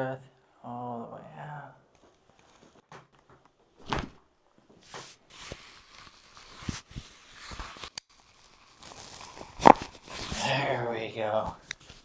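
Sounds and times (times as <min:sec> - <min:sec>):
rustling of body and clothing: 0:02.0 - 0:12.0
soft thumps: 0:02.8 - 0:05.2.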